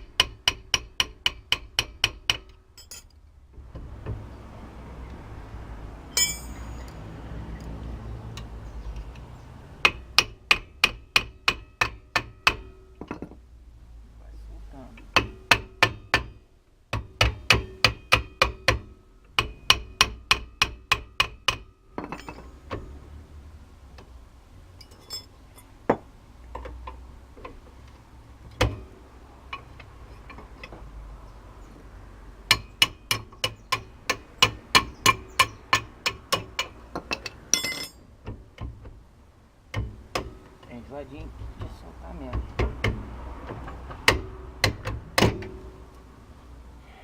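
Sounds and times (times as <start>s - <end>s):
hammer striking metal: 6.1s - 6.9s.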